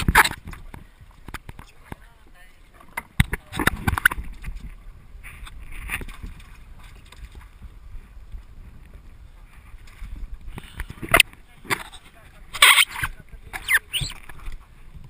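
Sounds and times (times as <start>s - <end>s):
hull noise: 12.6s - 15.0s.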